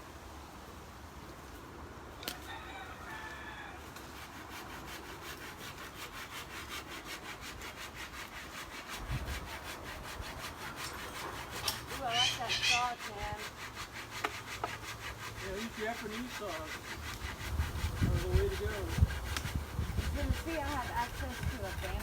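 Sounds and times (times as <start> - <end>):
hand saw cutting branch: 3.8 - 22.0.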